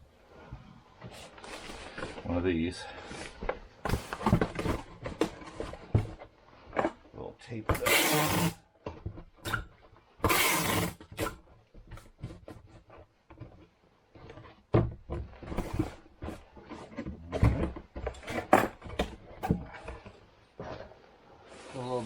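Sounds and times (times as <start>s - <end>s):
cardboard box being handled: 3.1s - 6.4s, 10.3s - 22.0s.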